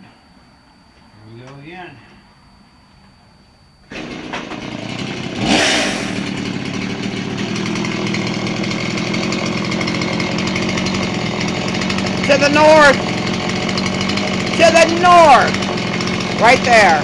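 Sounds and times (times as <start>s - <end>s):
chainsaw engine revving: 3.9s - 17.0s.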